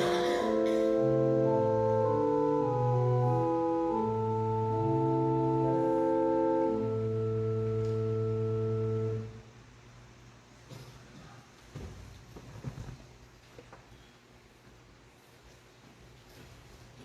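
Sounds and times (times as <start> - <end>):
organ playing held chords: 0.0 - 9.6.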